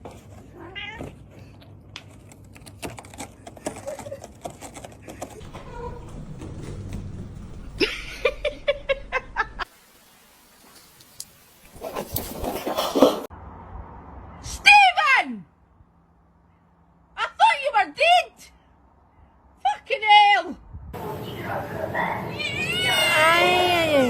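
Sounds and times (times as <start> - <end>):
cat meowing: 0.6 - 1.1.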